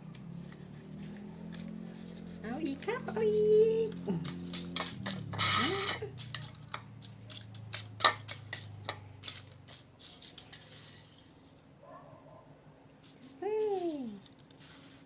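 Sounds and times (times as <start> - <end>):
hard objects clicking and knocking: 7.6 - 9.4.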